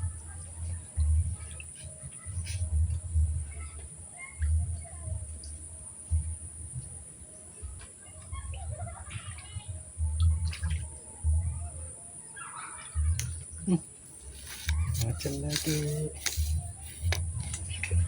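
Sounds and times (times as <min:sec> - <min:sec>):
faint bird chirps: 0:12.1 - 0:15.0.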